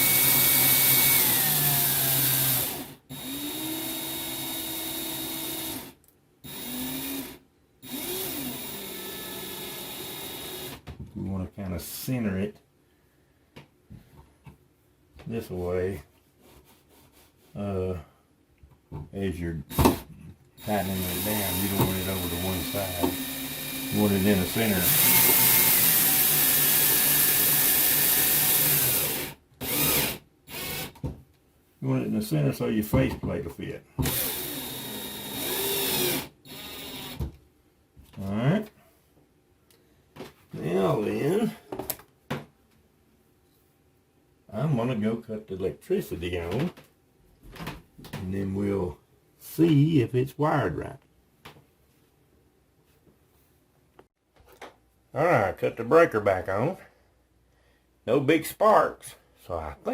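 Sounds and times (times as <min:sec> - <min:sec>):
cordless drill driving screws: 0:00.0 - 0:10.8, 0:19.7 - 0:31.0, 0:34.0 - 0:37.3.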